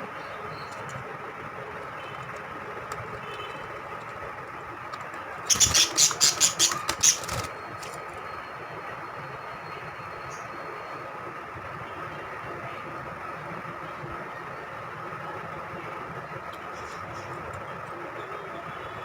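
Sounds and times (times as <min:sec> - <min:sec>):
steady background hum: 0:00.0 - 0:19.0
birds squawking harshly: 0:05.5 - 0:07.6.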